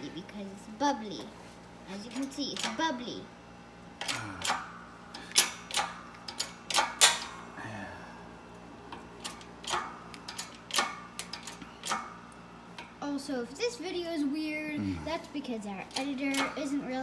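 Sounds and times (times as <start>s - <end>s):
metal parts clicking and cracking: 4.0s - 7.3s, 9.2s - 12.0s.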